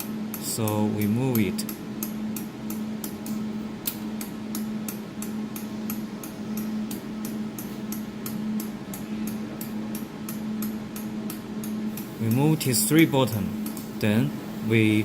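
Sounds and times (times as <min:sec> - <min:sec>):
welding machine humming: 0:00.0 - 0:15.0.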